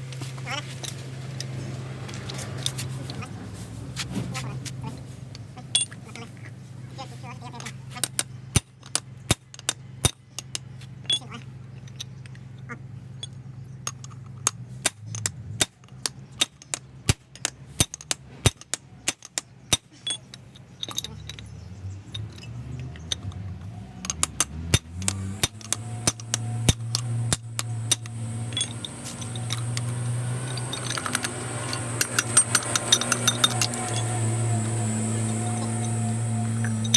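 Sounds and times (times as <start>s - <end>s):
metal tools knocking on metal: 24.0s - 36.9s
steady low hum: 24.7s - 36.9s.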